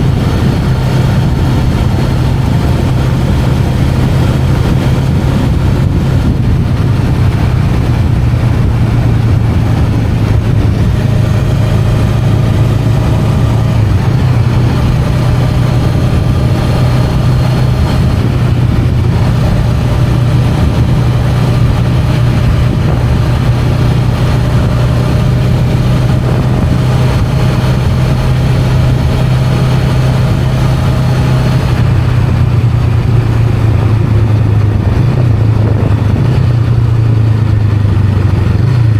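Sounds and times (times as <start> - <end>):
motorcycle engine cruising: 0.0 - 38.9.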